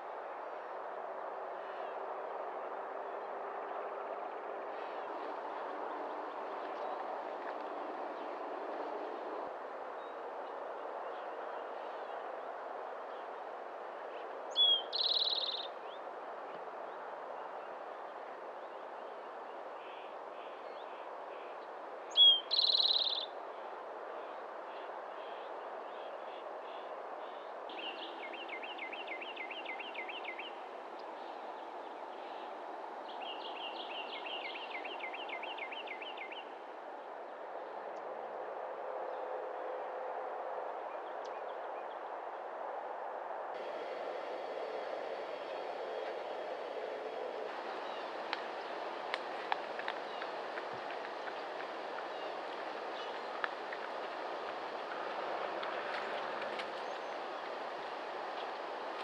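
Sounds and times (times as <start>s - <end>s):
background hiss: 43.6s - 59.0s
wild birds calling: 43.6s - 59.0s.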